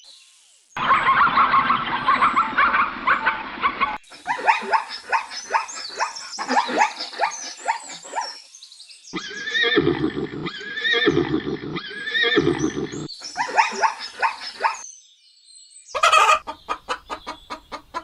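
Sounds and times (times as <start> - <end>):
rapid high yelping calls: 0.8 - 8.4, 9.2 - 14.8, 16.0 - 18.0
animal squealing: 9.2 - 14.8.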